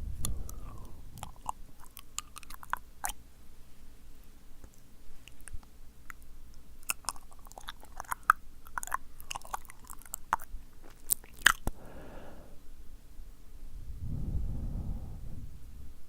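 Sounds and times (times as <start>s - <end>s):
soft breath: 0.0s - 1.2s, 11.7s - 12.8s, 13.8s - 16.0s
wet lip and tongue clicks: 0.2s - 3.2s, 4.6s - 11.8s.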